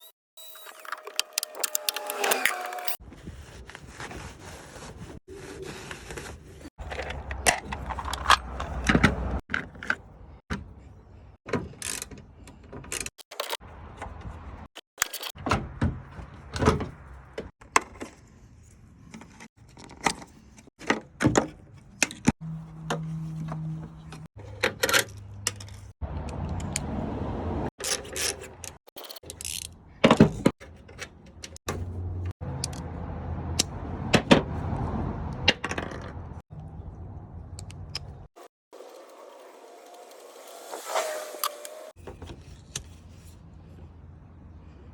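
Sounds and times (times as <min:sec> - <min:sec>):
tools clicking and tapping: 0:14.8 - 0:15.4.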